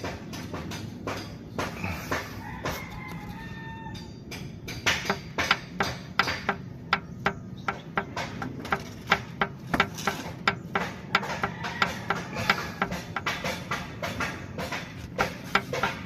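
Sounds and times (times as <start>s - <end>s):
hand tool tapping metal: 3.9s - 16.0s.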